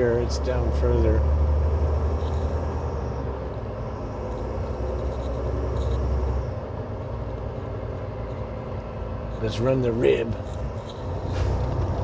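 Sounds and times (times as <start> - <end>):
diesel engine rumble: 0.0 - 12.0.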